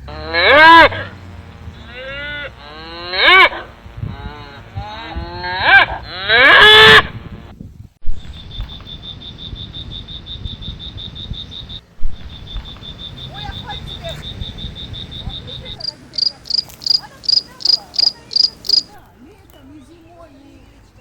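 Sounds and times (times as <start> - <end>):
cattle mooing: 0.0 - 7.1
rapid high-pitched pulsing: 0.0 - 7.2, 8.2 - 18.9.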